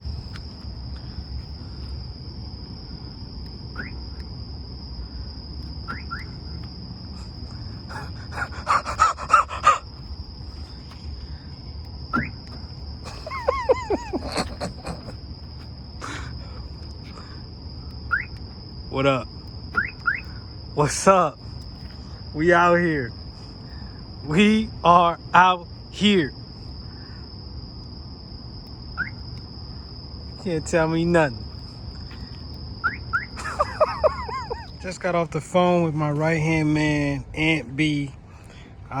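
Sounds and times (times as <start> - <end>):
high-pitched insect drone: 0.0 - 39.0
short rising chirps: 3.7 - 4.2
bursts of chirping calls: 7.8 - 10.0.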